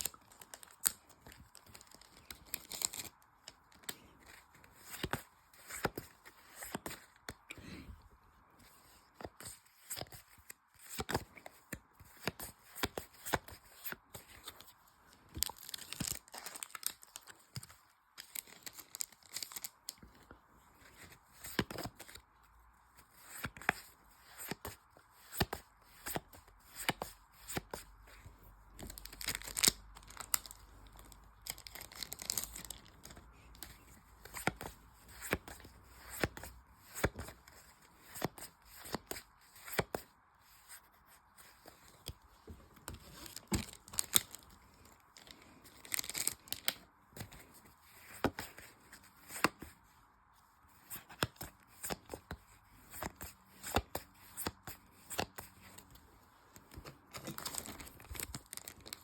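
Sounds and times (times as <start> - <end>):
foil wrappers crinkling and tearing: 45.8 - 46.7.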